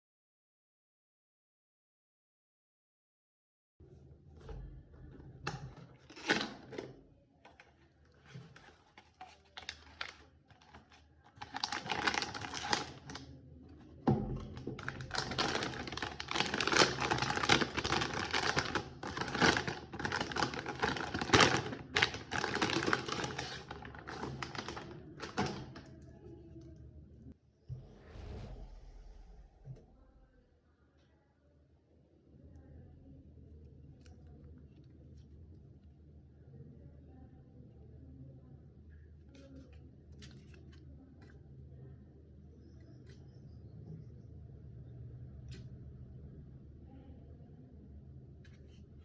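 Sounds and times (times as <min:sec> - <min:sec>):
packaging clicks taps and rustles: 0:05.5 - 0:13.3, 0:14.4 - 0:25.9.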